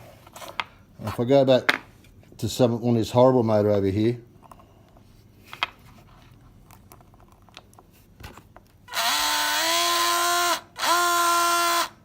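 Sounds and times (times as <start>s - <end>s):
electric motor whine: 8.9s - 11.9s.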